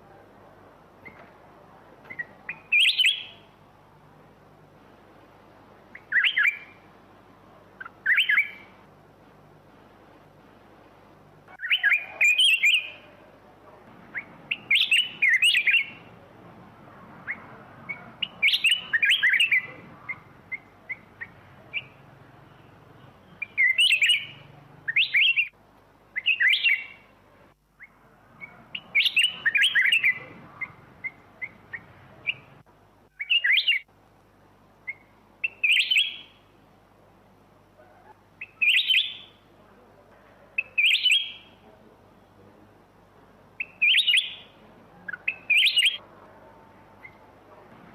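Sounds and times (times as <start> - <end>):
bird singing warbled phrases: 2.0 - 3.6, 5.9 - 6.9, 7.7 - 8.8, 11.5 - 13.4, 14.0 - 16.2, 17.0 - 27.2, 27.8 - 33.9, 34.8 - 36.6, 37.9 - 39.5, 40.6 - 42.4, 43.5 - 46.0, 47.0 - 47.3.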